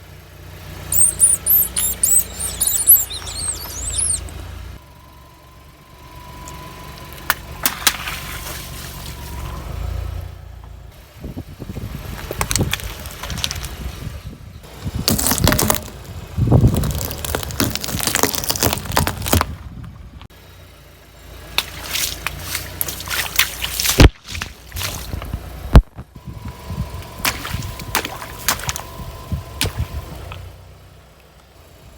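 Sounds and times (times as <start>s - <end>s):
high squeaking: 0.9s - 4.4s
crunching and squelching under tyre: 1.0s - 4.4s, 14.7s - 19.8s.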